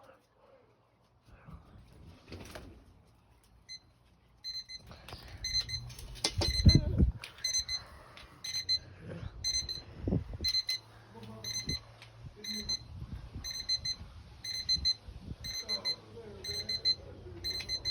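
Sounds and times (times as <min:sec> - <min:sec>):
alarm clock beeping: 0:03.7 - 0:17.9.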